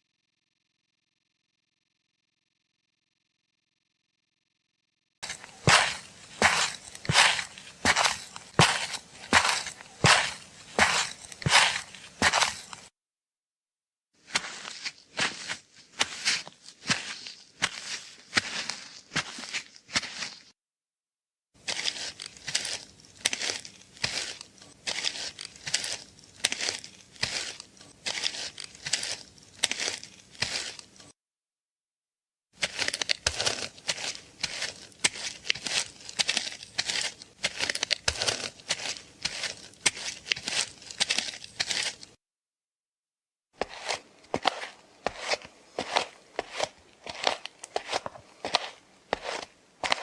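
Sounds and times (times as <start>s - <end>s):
rhythmic crunching and rustling: 5.2s - 12.9s, 21.6s - 31.2s, 32.6s - 42.2s.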